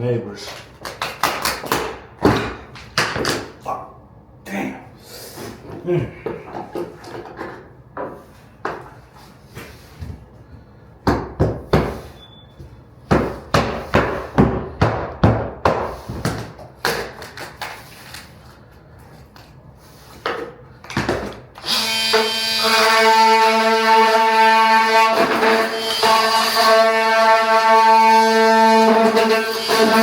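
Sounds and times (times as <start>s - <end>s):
hammer knocking on wood: 13.1s - 16.4s
music with long held tones: 21.8s - 30.0s.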